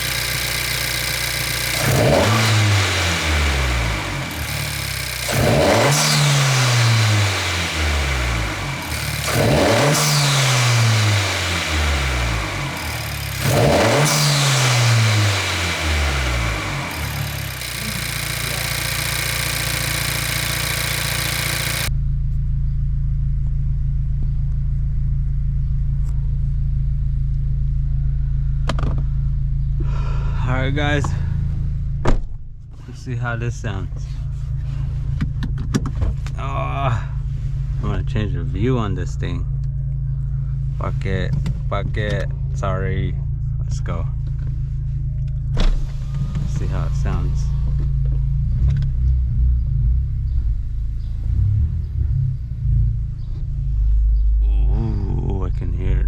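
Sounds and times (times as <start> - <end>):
car engine revving: 0.0 - 21.9, 41.8 - 56.0
car engine idling: 0.0 - 32.0, 32.8 - 56.0.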